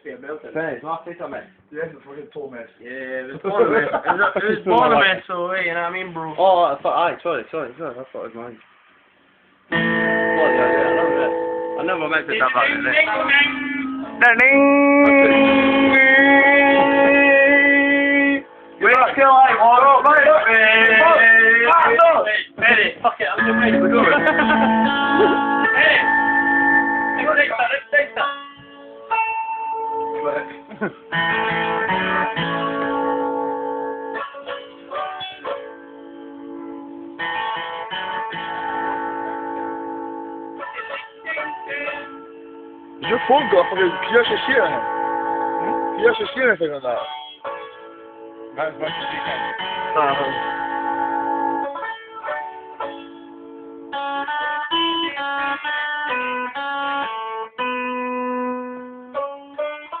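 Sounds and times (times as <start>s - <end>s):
strummed guitar-like strings: 9.7s - 60.0s
banjo: 22.6s - 26.9s, 34.1s - 39.8s, 43.0s - 46.3s, 48.6s - 57.7s, 59.2s - 60.0s.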